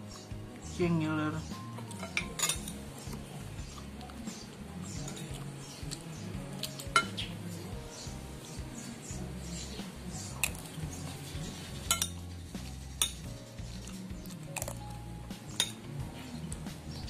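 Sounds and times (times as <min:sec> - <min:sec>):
background music: 0:00.0 - 0:17.0
cutlery clinking against dish: 0:01.8 - 0:02.8, 0:06.7 - 0:07.2, 0:11.9 - 0:12.2.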